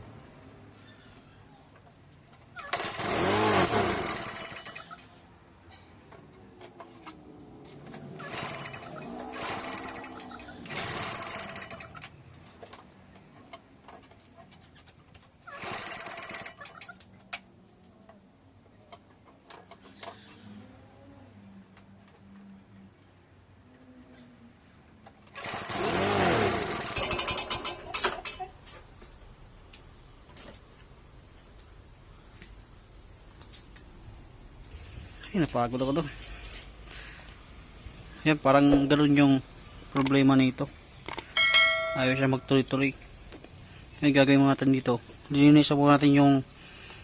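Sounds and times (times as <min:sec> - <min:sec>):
lawn mower engine sputtering: 0:02.5 - 0:05.0, 0:07.8 - 0:12.2, 0:15.4 - 0:17.0, 0:25.2 - 0:28.5
pull-start cord: 0:02.6 - 0:04.8, 0:25.2 - 0:28.4.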